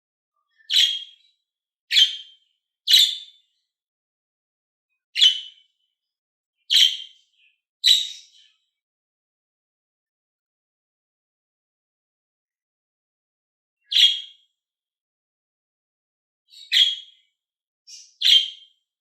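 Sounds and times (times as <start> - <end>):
bird chirping: 0.4 - 3.6, 5.2 - 5.8, 6.6 - 8.7, 13.8 - 14.5, 16.5 - 17.3, 17.9 - 18.8.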